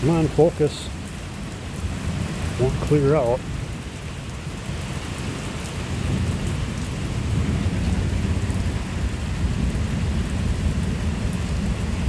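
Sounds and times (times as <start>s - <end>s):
rain drop ticks: 0.0s - 3.4s
heavy rain hissing: 0.0s - 12.0s
low thunder rumble: 4.7s - 12.0s.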